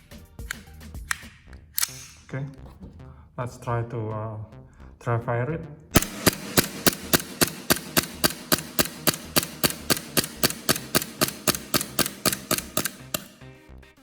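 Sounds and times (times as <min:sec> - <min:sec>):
airsoft pistol slide clacking: 0:00.4 - 0:02.2, 0:06.0 - 0:13.4.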